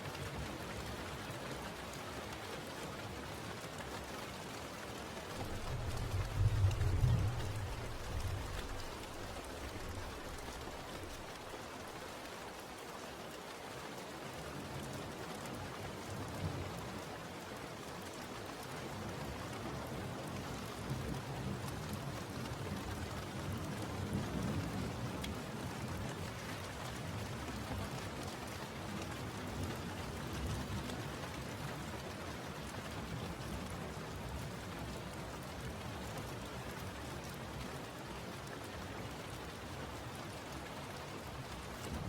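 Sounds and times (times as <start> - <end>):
steady rain hissing: 0.0 - 42.0
low thunder rumbles: 5.4 - 11.6.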